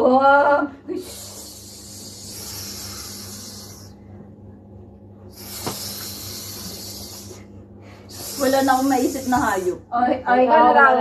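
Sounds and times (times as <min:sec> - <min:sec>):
low steady hum: 0:00.0 - 0:11.0
person hissing like a snake: 0:01.0 - 0:04.0, 0:05.3 - 0:07.5, 0:08.1 - 0:09.8.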